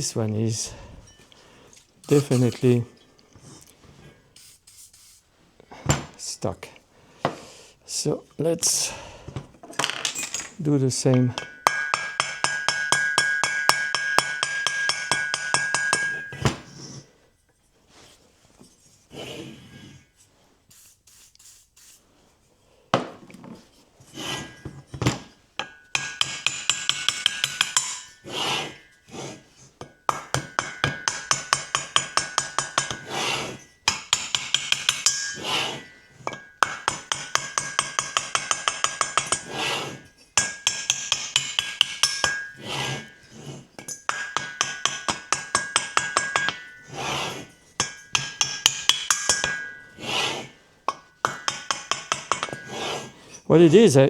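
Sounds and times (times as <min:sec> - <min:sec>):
hammer tapping on metal: 0:11.1 - 0:16.7, 0:25.6 - 0:28.2, 0:29.8 - 0:39.6, 0:40.4 - 0:42.9, 0:43.8 - 0:47.0, 0:47.8 - 0:53.0.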